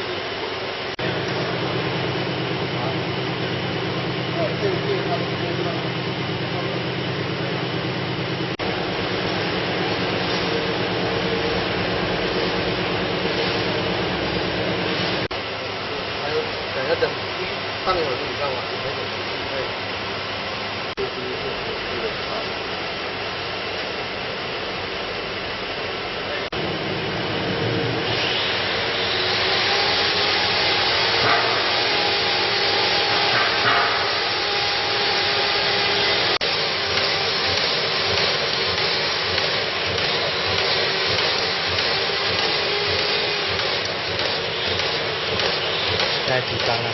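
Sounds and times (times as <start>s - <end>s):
bag making machine running: 0.0s - 15.6s, 26.2s - 46.9s.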